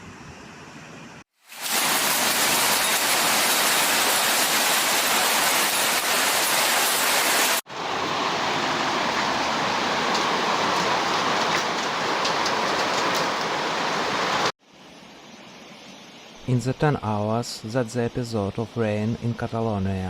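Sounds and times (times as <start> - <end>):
rushing flood water: 1.5 - 14.5.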